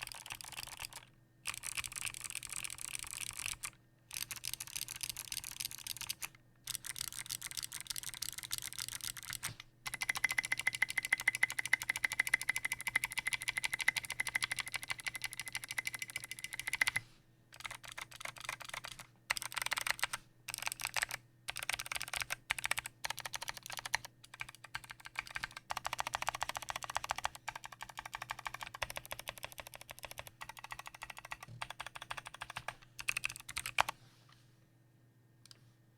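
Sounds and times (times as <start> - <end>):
mechanical keyboard typing: 0.0 - 17.0, 17.6 - 33.9.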